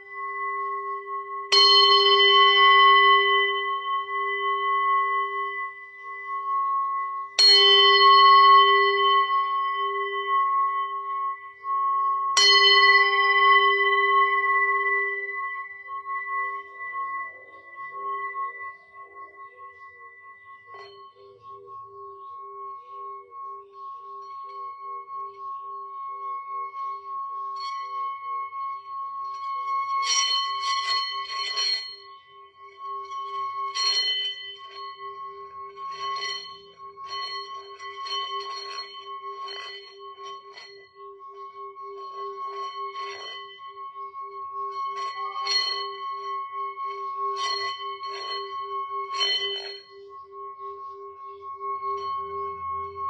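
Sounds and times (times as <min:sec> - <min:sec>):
bell-like metallic strikes: 0:00.0 - 0:06.2, 0:07.4 - 0:11.6, 0:12.3 - 0:20.0, 0:29.5 - 0:53.0
singing bowls humming and ringing: 0:00.0 - 0:53.0.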